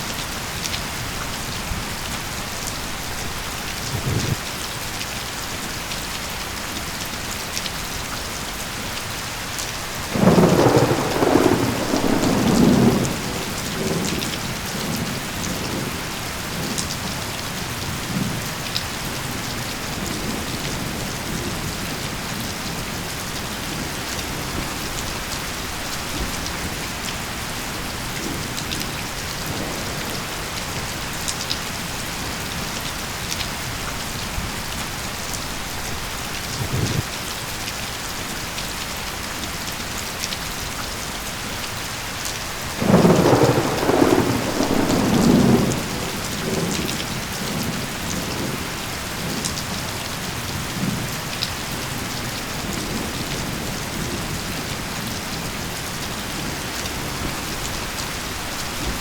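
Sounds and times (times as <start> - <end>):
steady rain falling: 0.0 - 59.0
low thunder rumble: 3.0 - 4.4, 10.2 - 17.2, 42.8 - 49.8.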